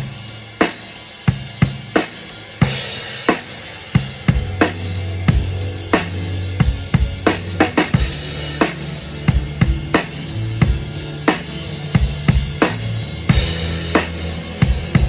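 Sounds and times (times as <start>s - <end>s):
drum kit groove: 0.0s - 15.0s
low bass line: 4.3s - 15.0s.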